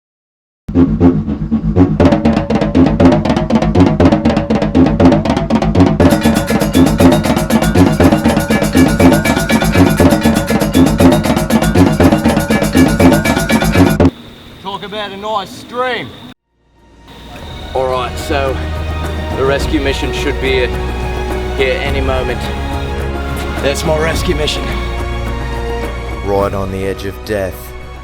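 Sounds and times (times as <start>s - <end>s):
fast drum beat: 0.7s - 14.1s, 23.4s - 25.0s
cymbals: 6.0s - 14.1s.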